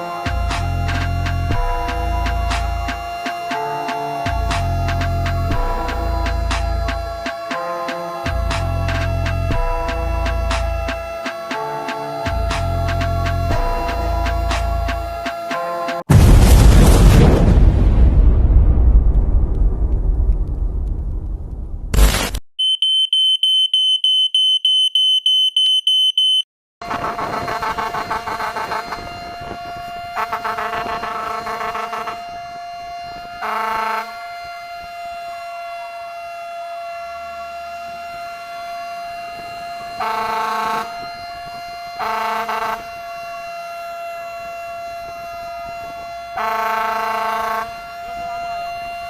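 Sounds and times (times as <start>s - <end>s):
air horn blasts: 0.0s - 16.1s, 26.2s - 49.0s
fire truck siren: 0.0s - 16.3s, 22.6s - 49.0s
electronic alarm beeping: 22.6s - 26.5s, 27.2s - 34.2s.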